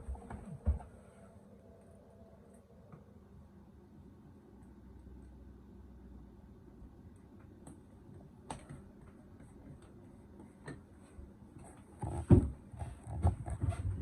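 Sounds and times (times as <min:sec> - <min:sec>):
plastic knocks and handling noise: 0:11.8 - 0:14.0.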